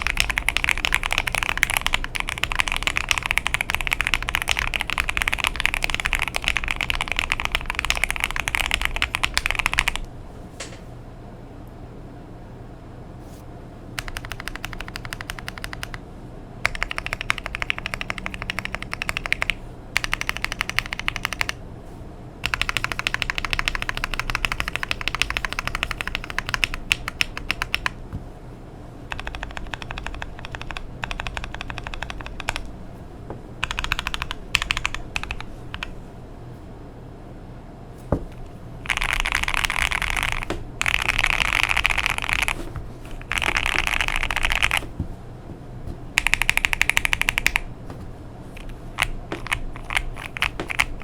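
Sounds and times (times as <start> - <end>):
fast mechanical keyboard typing: 0.0 - 10.1, 14.0 - 16.0, 16.6 - 21.6, 22.4 - 28.0, 29.1 - 32.7, 33.6 - 36.0, 38.2 - 45.0, 46.2 - 47.7, 48.6 - 51.0.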